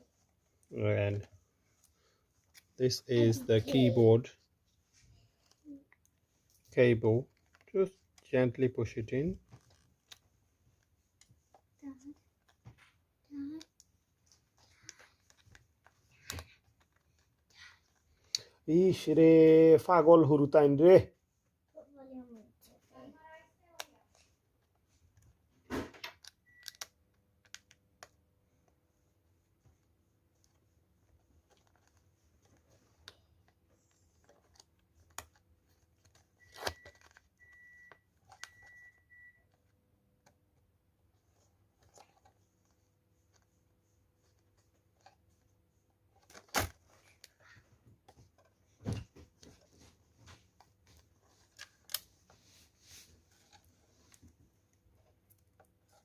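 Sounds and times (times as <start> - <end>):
plastic laptop parts clicking: 26.0 - 28.2, 31.4 - 38.8.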